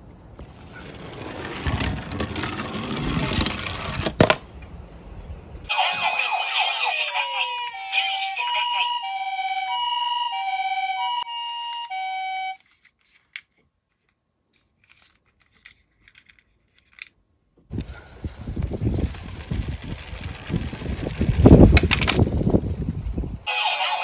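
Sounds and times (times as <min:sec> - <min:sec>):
falling siren glides: 0:05.7 - 0:12.6
two-tone ambulance siren: 0:05.7 - 0:12.6.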